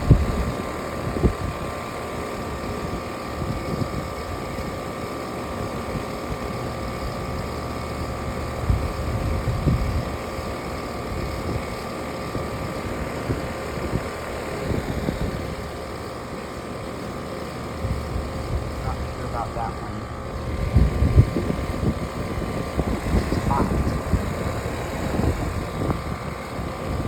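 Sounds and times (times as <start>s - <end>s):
low rumbling and buffeting: 0.0s - 27.0s
mechanical hum with whine: 0.0s - 27.0s.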